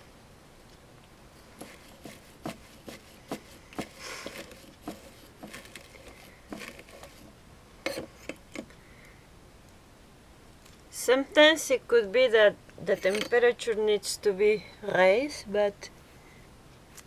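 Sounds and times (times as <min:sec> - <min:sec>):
scratchy rustle: 0:01.3 - 0:08.2
tools clicking and tapping: 0:01.6 - 0:08.8.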